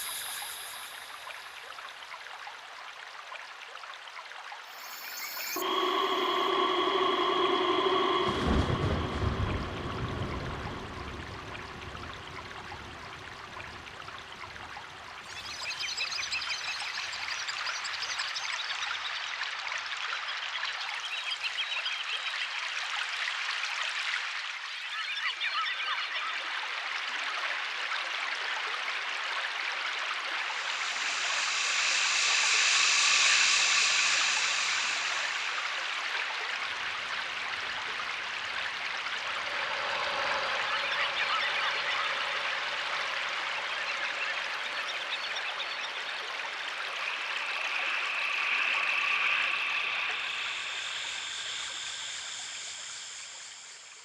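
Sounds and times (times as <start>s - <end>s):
running water: 0.0s - 20.0s, 26.4s - 54.0s
high pitched sound: 4.7s - 13.1s, 30.5s - 37.1s, 38.5s - 53.4s.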